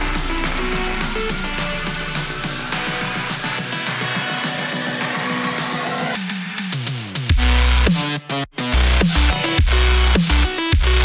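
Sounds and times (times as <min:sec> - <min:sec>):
heavy bass drop: 0:00.0 - 0:04.2, 0:07.3 - 0:07.9, 0:08.6 - 0:11.0.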